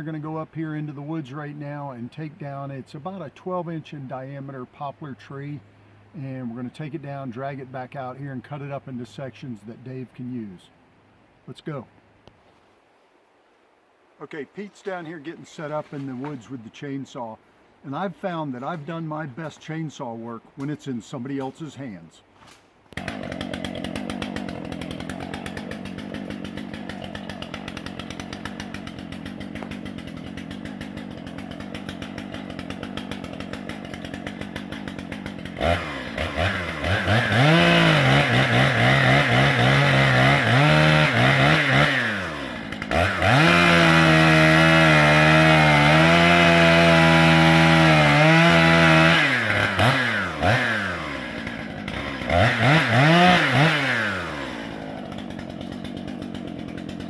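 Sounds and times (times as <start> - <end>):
chainsaw engine revving: 23.0 - 57.0.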